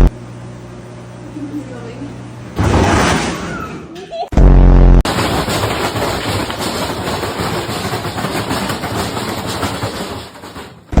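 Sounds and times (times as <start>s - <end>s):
washing machine rattling: 5.0s - 11.0s.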